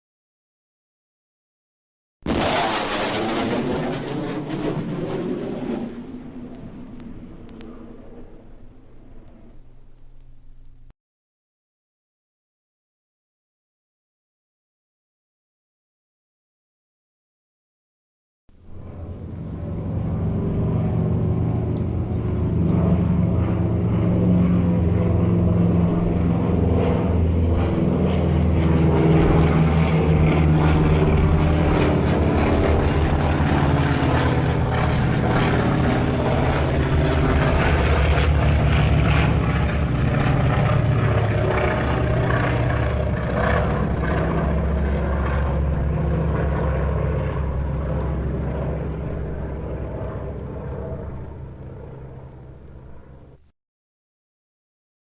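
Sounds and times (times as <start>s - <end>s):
propeller airplane engine droning: 2.3s - 10.9s, 18.5s - 53.5s.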